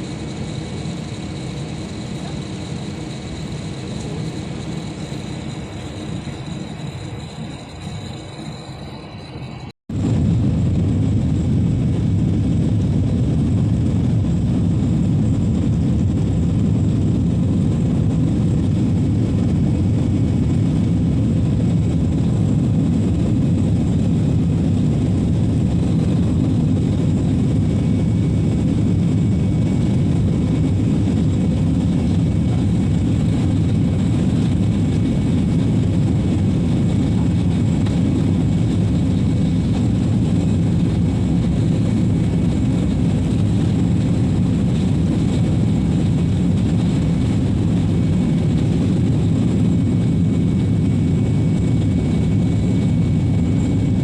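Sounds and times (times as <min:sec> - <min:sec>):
airliner cabin engine rumble: 0:00.0 - 0:54.0.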